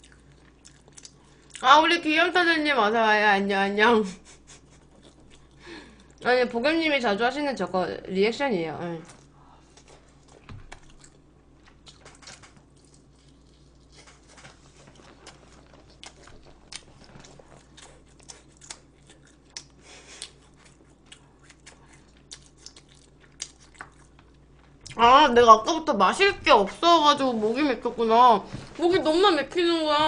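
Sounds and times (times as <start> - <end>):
person chewing food: 0.0 - 1.6, 4.4 - 6.2, 9.1 - 25.0.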